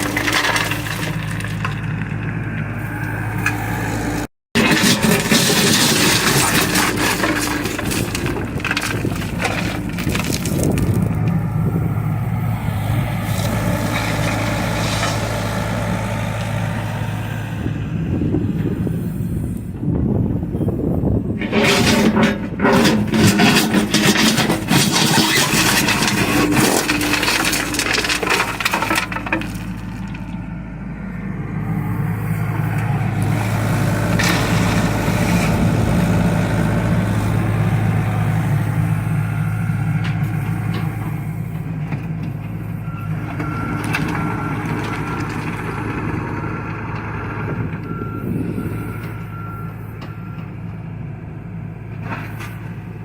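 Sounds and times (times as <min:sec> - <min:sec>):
clattering and crunching: 0:00.0 - 0:02.7, 0:03.4 - 0:11.6, 0:21.4 - 0:30.5, 0:32.7 - 0:45.9
excavator diesel engine running: 0:00.0 - 0:53.0.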